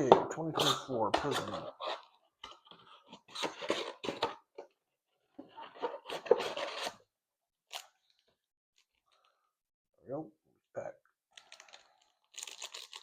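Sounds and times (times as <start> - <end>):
wrapper and cardboard crinkling: 11.3 - 13.0.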